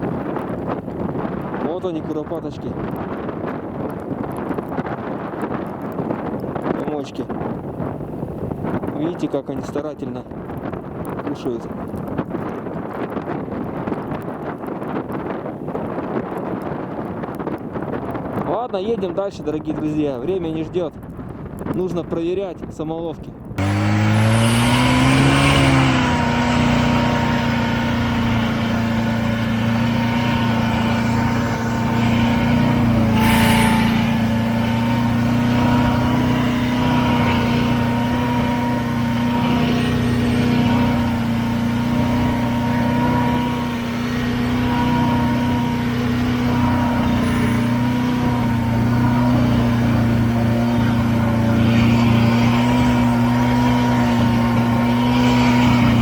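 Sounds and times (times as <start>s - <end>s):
snowmobile engine pulling away: 23.6s - 56.0s
brief rush of noise: 33.2s - 34.4s.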